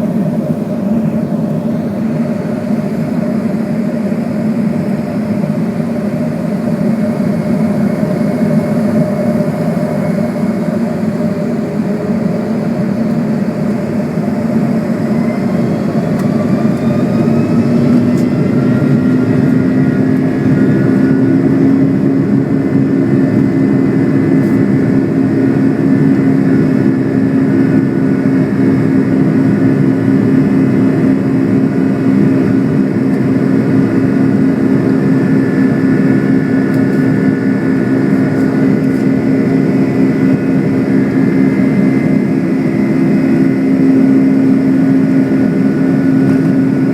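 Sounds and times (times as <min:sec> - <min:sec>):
jet engines droning in cabin: 0:00.0 - 0:46.9.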